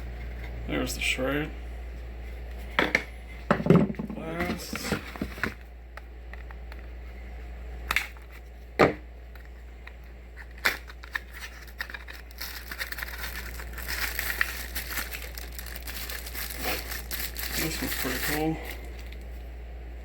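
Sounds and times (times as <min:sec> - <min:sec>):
plastic packaging crinkling: 0:10.4 - 0:19.5.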